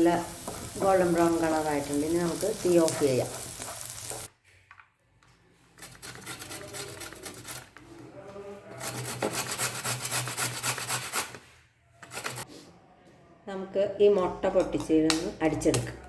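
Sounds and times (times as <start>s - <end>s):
utensil scraping cookware: 5.8s - 11.4s, 12.0s - 12.4s.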